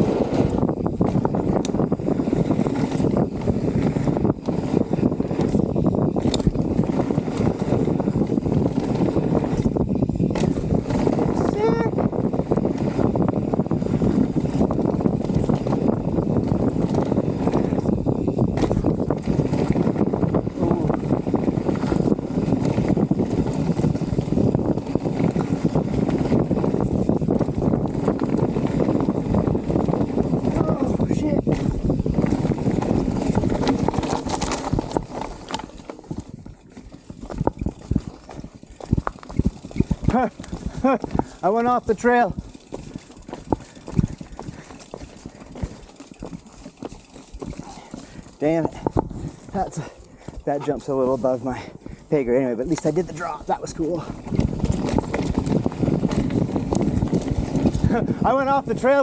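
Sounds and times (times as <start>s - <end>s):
bike tyre rumble and rattle: 0.0s - 59.0s
wind rushing over microphone: 0.0s - 59.0s.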